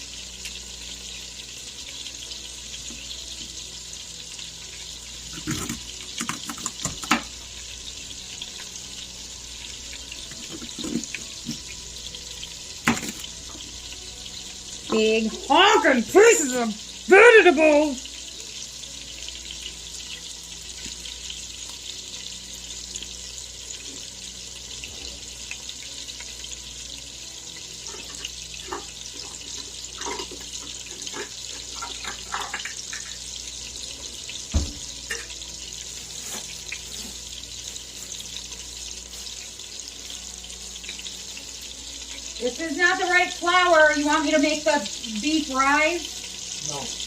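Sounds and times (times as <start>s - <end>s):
tap running into sink: 5.3s - 7.3s, 10.3s - 11.6s, 12.8s - 13.2s, 34.5s - 35.3s
utensils clinking: 5.3s - 7.3s, 10.3s - 11.6s.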